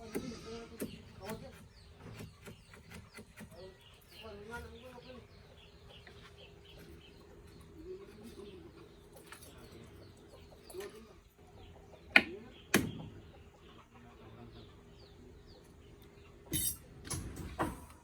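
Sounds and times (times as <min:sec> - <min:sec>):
chickens clucking: 0:03.6 - 0:16.7.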